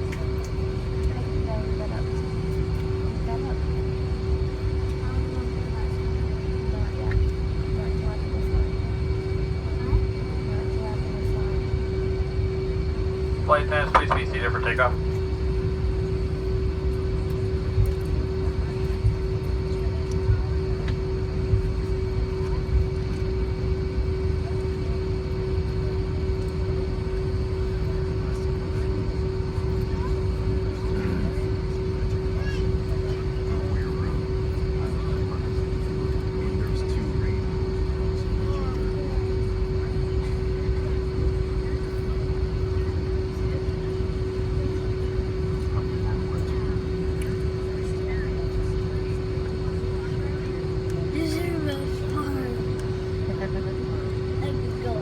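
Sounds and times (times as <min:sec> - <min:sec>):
airliner engines droning: 0:00.0 - 0:55.0
constant hum: 0:00.0 - 0:55.0
heavy low rumble: 0:13.4 - 0:15.0.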